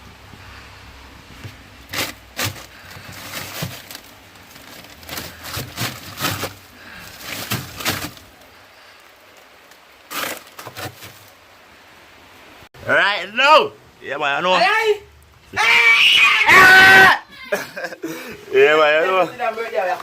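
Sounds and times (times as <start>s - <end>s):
rustling: 0.0s - 12.5s
knocks and cracks: 1.4s - 8.4s.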